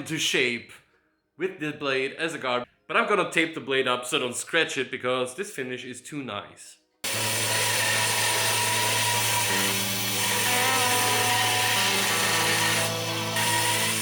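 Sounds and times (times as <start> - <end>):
belt grinder grinding: 7.0 - 14.0.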